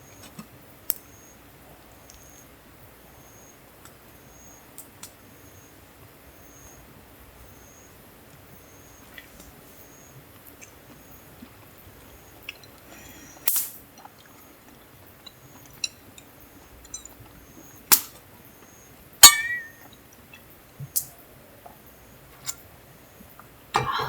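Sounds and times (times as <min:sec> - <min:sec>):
utensils clinking against dishes: 0:15.2 - 0:17.2, 0:19.2 - 0:20.0.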